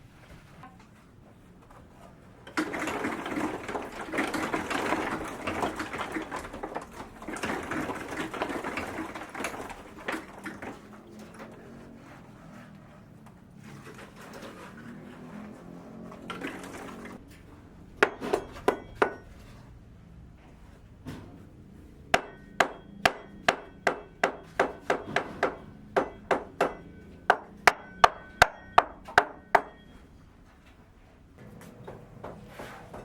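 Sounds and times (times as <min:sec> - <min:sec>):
hammer blows with metallic ring: 0:18.0 - 0:19.4, 0:22.2 - 0:30.2.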